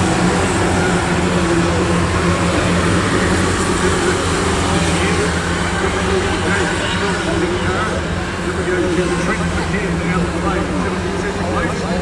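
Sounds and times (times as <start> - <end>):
racing car engines: 0.0 - 12.0.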